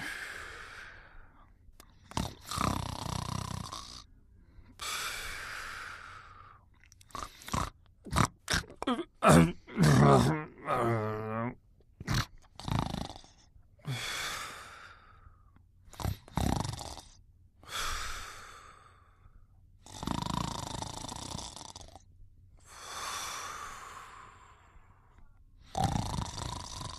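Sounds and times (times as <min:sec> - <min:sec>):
person snoring: 0:01.9 - 0:04.1, 0:07.1 - 0:15.0, 0:15.9 - 0:19.0, 0:19.8 - 0:22.0, 0:25.7 - 0:26.9.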